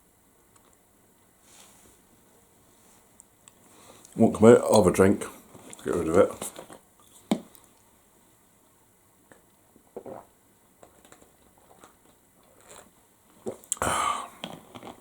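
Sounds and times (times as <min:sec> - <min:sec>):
breathy sound: 0:13.8 - 0:14.4.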